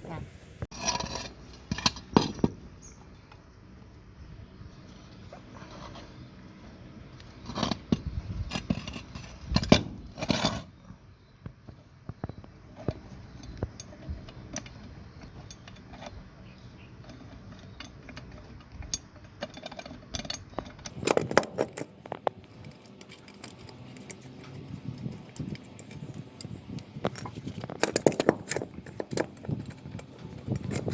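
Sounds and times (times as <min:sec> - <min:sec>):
metal parts clattering: 0:00.7 - 0:02.7, 0:13.4 - 0:30.9.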